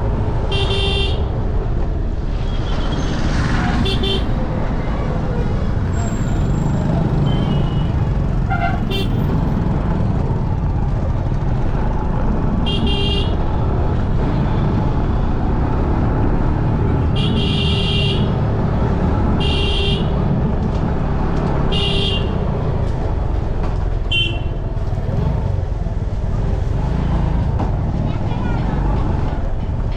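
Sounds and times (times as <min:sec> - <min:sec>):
road traffic rumbling: 0:00.0 - 0:29.9
vehicle horns honking: 0:03.8 - 0:04.4, 0:08.5 - 0:09.3, 0:17.2 - 0:18.4, 0:19.4 - 0:20.1, 0:24.1 - 0:24.6.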